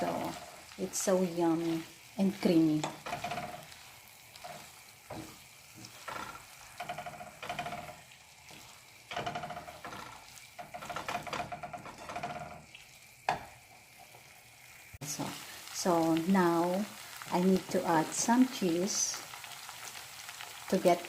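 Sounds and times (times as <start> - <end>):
utensil scraping pan: 0.0 - 13.5
faint sizzle: 0.0 - 21.0.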